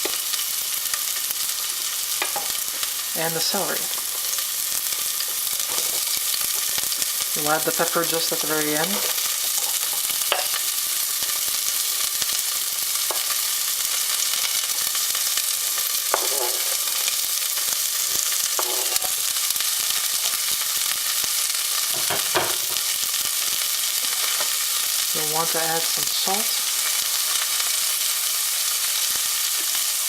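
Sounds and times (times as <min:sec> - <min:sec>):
vegetables sizzling in oil: 0:00.0 - 0:30.0
utensil scraping pot: 0:05.6 - 0:06.2, 0:16.0 - 0:17.1, 0:18.1 - 0:19.2.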